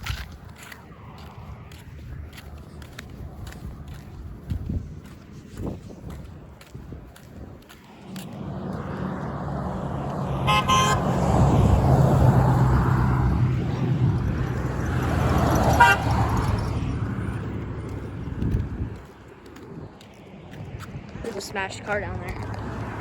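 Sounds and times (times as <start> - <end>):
vehicles passing close by: 0.0 - 23.0
car horn toots: 10.4 - 11.4, 15.6 - 16.4.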